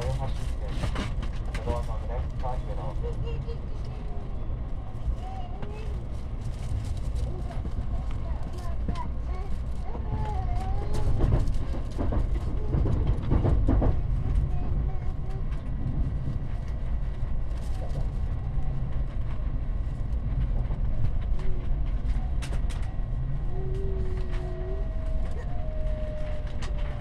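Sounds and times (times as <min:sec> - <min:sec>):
train deep rumble: 0:00.0 - 0:27.0.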